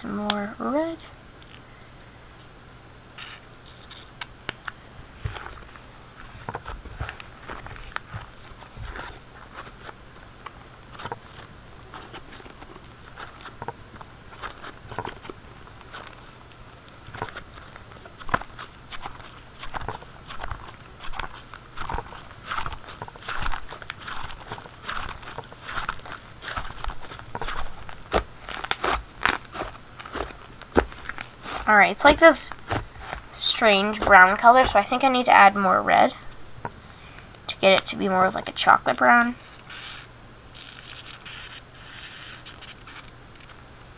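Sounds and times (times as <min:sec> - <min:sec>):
slime being kneaded and squeezed: 0:01.4 - 0:04.3, 0:17.0 - 0:35.1, 0:38.3 - 0:43.9.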